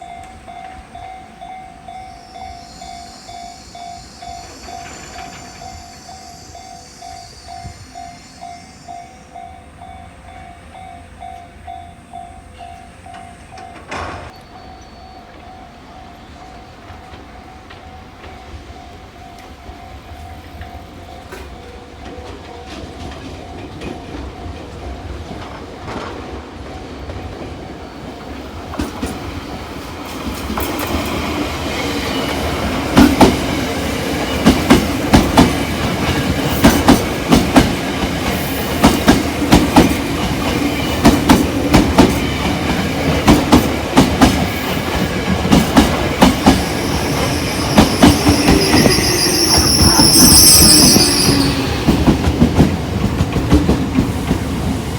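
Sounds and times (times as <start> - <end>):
electric train passing: 0.0 - 54.9
wheels clacking over rail joints: 12.6 - 19.7, 20.4 - 54.9.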